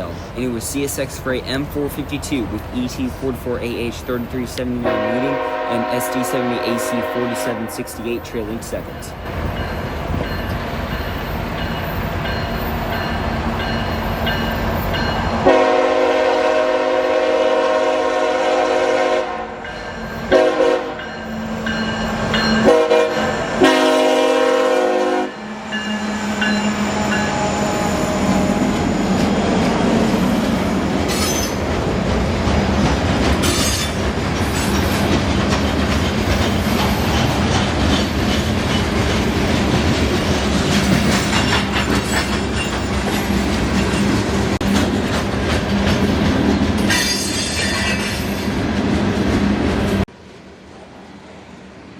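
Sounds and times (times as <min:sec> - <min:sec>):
locomotive engine rumble: 0:00.0 - 0:16.3
train horn blasts: 0:04.8 - 0:08.0, 0:15.4 - 0:19.6, 0:20.3 - 0:21.1, 0:22.6 - 0:28.8
train wheels clattering on rails: 0:28.4 - 0:50.0.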